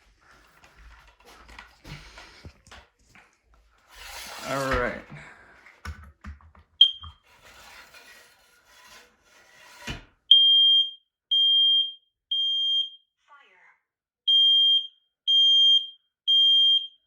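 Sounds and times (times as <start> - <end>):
knocks and rubbing: 5.8 - 10.2
smoke alarm beeping: 6.8 - 7.2, 10.3 - 13.1, 14.3 - 17.0.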